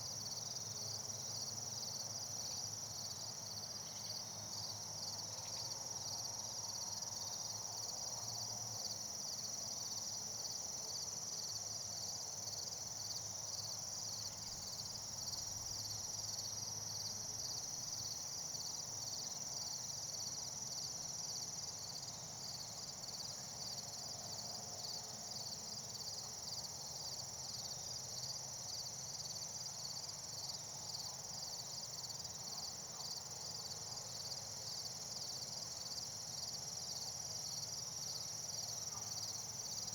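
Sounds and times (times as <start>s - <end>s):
insect chirp pulsing: 8.8s - 39.9s.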